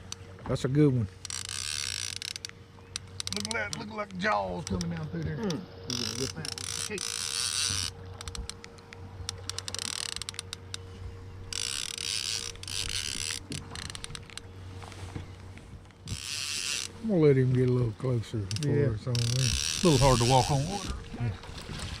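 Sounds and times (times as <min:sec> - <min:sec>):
fishing reel whirring: 0:01.1 - 0:05.0, 0:05.8 - 0:14.7, 0:15.8 - 0:21.0
fishing reel ratcheting clicks: 0:01.2 - 0:05.0, 0:05.9 - 0:10.8, 0:11.5 - 0:14.4, 0:16.1 - 0:17.0, 0:18.5 - 0:20.5.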